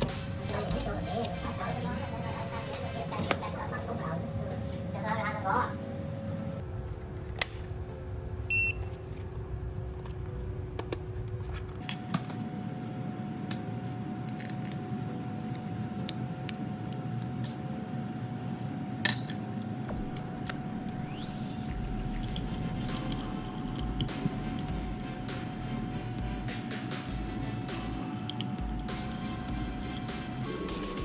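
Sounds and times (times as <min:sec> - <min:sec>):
steady low hum: 0:00.0 - 0:31.0
short electronic beep: 0:08.5 - 0:08.9
small clicks: 0:27.7 - 0:29.2.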